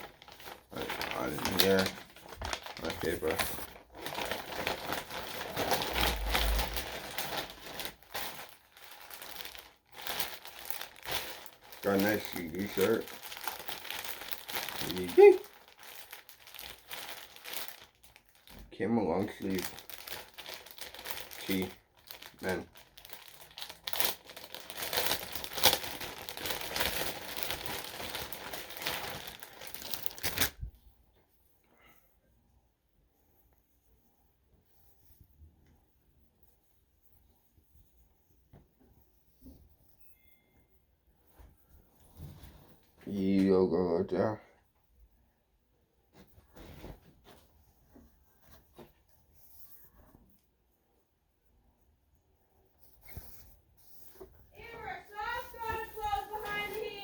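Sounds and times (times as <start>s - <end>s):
paper packaging rustling: 0.0s - 30.7s, 53.0s - 57.0s.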